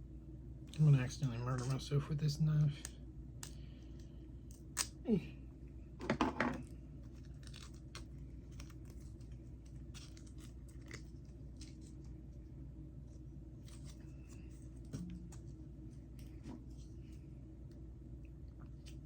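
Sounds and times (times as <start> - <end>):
plastic wrapper clicks and scratches: 7.1 - 12.1.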